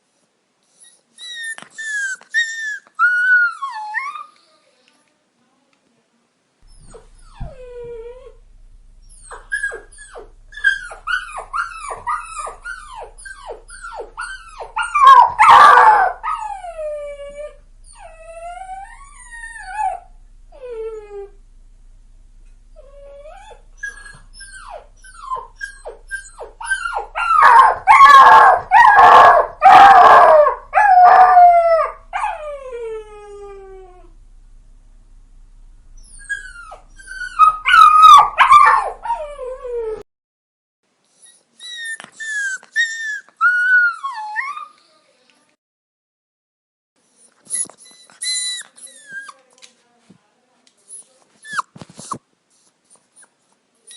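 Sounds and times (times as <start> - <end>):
puppy whimpering and howling: 0.8 - 4.4, 6.7 - 8.4, 9.1 - 21.4, 22.8 - 34.1, 36.0 - 40.1, 41.2 - 44.8, 47.2 - 49.5, 50.9 - 52.2.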